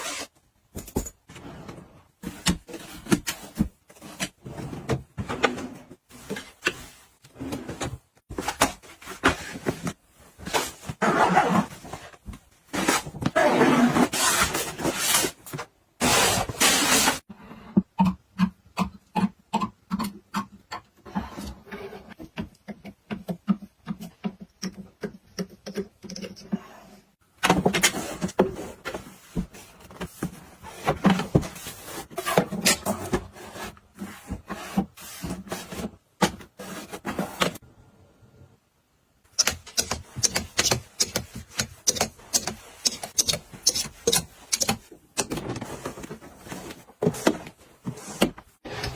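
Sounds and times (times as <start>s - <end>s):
household items clattering: 42.2s - 48.9s.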